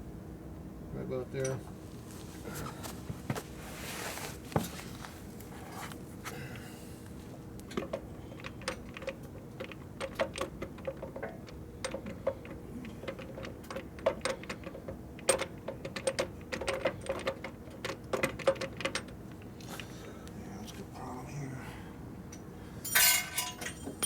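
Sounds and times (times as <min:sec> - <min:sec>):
faint steady hum: 0:00.0 - 0:24.0
metal parts and tools clinking: 0:22.8 - 0:24.0.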